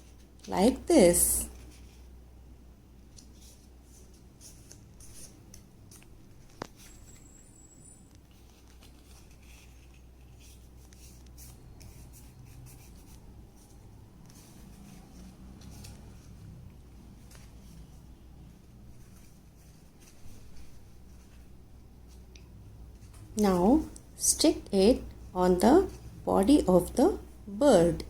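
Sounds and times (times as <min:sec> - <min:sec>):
paper rustling and scraping: 0:03.1 - 0:22.3.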